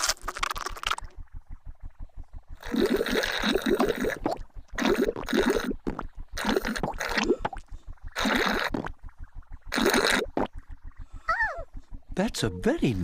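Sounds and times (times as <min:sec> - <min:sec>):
gurgling slurps: 0:00.0 - 0:01.1, 0:02.6 - 0:09.0, 0:09.7 - 0:10.6
faint low pulsing: 0:00.0 - 0:13.0.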